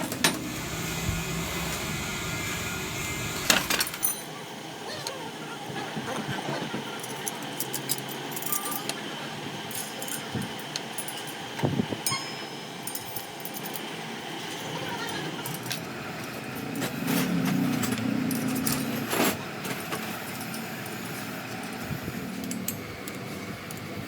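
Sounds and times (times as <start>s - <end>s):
steady background noise: 0.0s - 24.0s
low hum: 0.3s - 4.2s
metal parts clinking: 3.5s - 4.3s.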